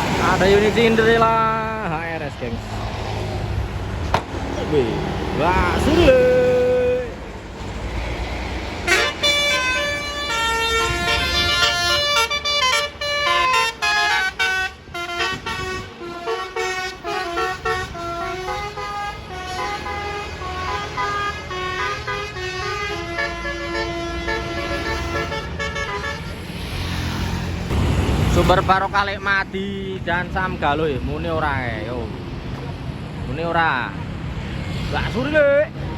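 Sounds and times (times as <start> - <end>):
bus engine rumbling: 0.0 - 35.9
bus horn playing a melody: 8.8 - 26.4.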